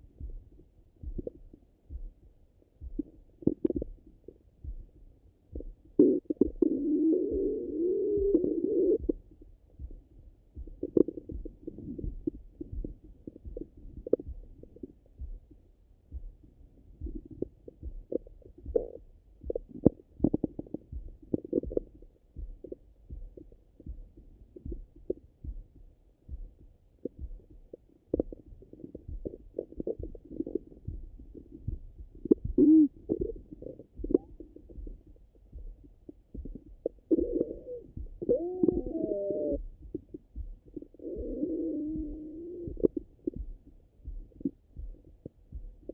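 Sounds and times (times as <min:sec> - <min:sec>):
stomach gurgling through stethoscope: 0:06.0 - 0:09.1, 0:32.2 - 0:34.8, 0:36.5 - 0:40.0, 0:40.7 - 0:43.1
long wavering rumble: 0:37.2 - 0:39.6.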